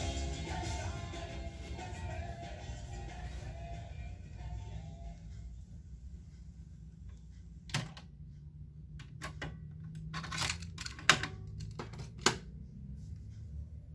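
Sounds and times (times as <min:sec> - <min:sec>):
low hum: 0:00.0 - 0:10.6
cassette deck clicks and clunks: 0:07.7 - 0:08.1.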